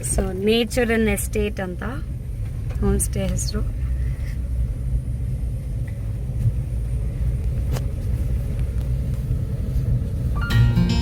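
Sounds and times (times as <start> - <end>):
car driving rumble: 0.0 - 11.0.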